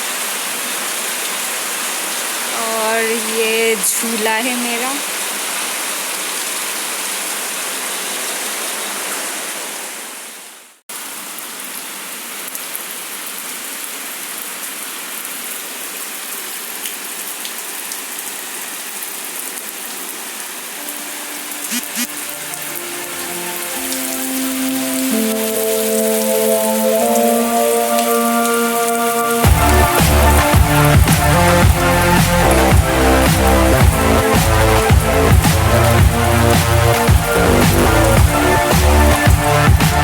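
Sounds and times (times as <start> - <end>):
heavy rain falling: 0.0 - 40.0
music: 20.8 - 40.0.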